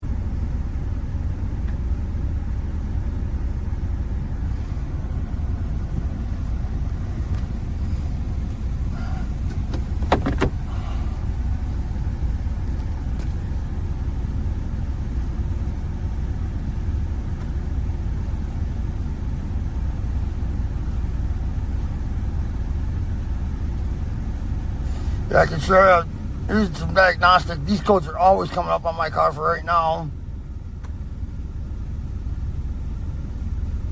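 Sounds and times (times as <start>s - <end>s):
car engine rumble: 0.0s - 33.9s.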